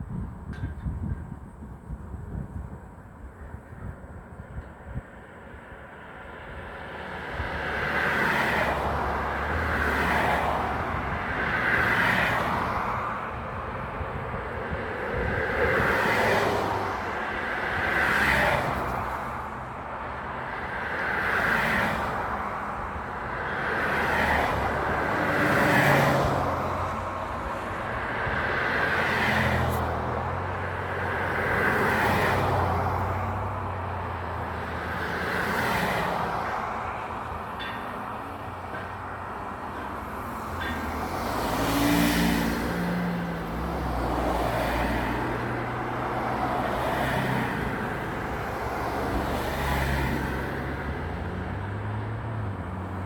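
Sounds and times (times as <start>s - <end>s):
vehicles passing: 0.0s - 53.0s.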